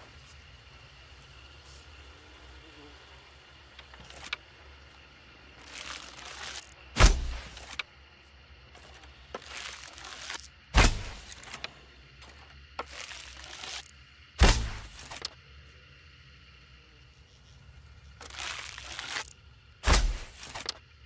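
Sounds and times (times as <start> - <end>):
arrow hissing: 5.6 - 7.8, 8.9 - 11.6, 12.8 - 15.3, 18.2 - 20.8
arrow thwack with low thump: 7.0 - 7.5, 10.8 - 11.2, 14.4 - 15.0, 19.8 - 20.4.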